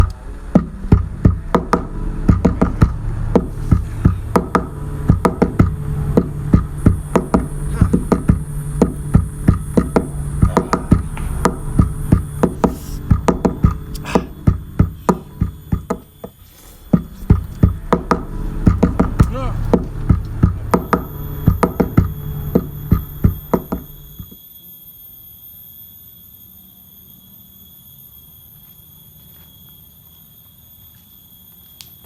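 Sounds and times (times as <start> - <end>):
low drone: 0.0 - 24.4
sharp percussive hits: 0.6 - 24.3
hissing high layer: 1.8 - 24.2.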